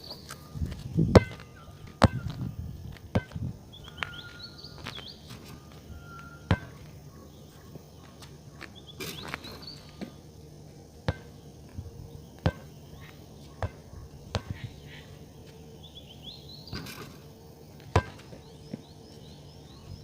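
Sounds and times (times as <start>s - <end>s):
birds chirping: 0.0s - 20.0s
bird whistles: 3.8s - 6.6s.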